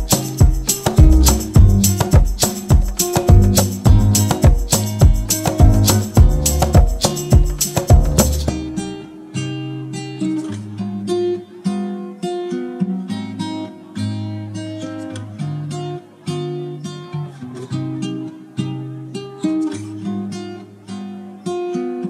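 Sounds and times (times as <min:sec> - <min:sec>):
acoustic guitar chords: 0:00.0 - 0:22.0.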